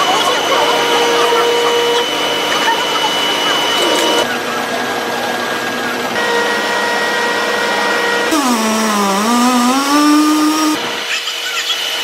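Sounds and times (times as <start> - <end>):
chainsaw engine running: 8.3 - 11.0.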